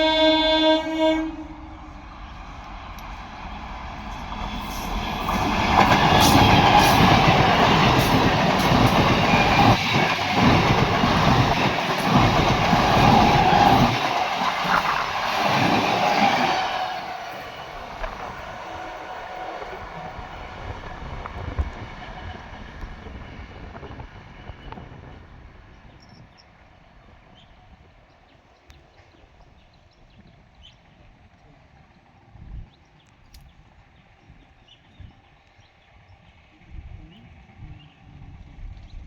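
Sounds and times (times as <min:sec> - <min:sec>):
train wheels clattering on rails: 0:02.3 - 0:26.2.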